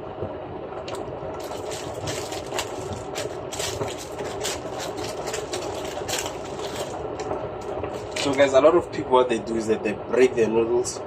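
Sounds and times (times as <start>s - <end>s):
low hum: 0.0s - 11.0s
rustling and crackling handling: 0.9s - 8.6s.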